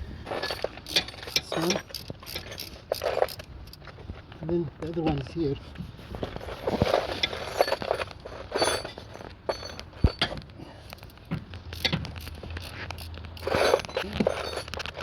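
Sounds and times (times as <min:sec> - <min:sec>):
wrench clinking on metal: 0:00.3 - 0:03.9, 0:06.9 - 0:15.0.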